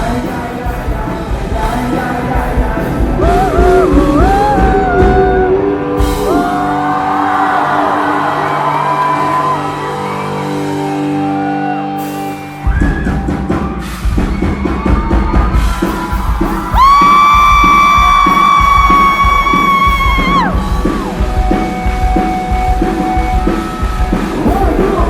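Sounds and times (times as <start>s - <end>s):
loud drums and bass: 0.0s - 6.8s, 12.0s - 25.0s
person singing: 0.0s - 10.1s.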